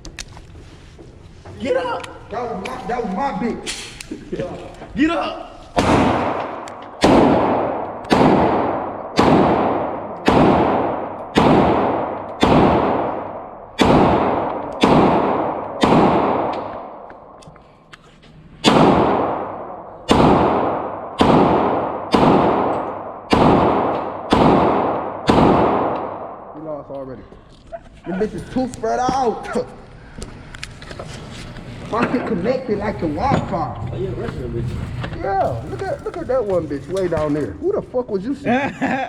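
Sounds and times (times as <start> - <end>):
handgun shots echoing: 5.8 - 17.3, 18.6 - 26.6.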